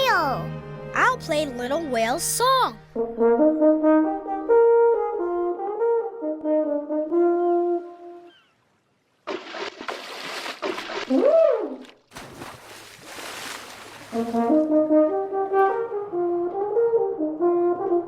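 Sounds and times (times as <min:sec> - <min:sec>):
french horn melody: 0:02.9 - 0:08.2, 0:14.1 - 0:18.0.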